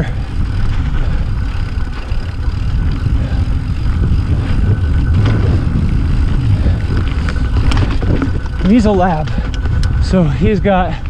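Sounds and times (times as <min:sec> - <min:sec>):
tyres rolling over dirt: 0:00.0 - 0:10.2
wind on microphone: 0:00.0 - 0:11.0
faint ticks: 0:06.8 - 0:10.2.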